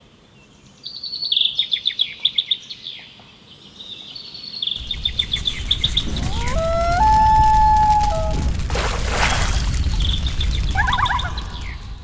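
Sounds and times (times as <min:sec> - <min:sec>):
rush of noise: 0:04.8 - 0:09.1.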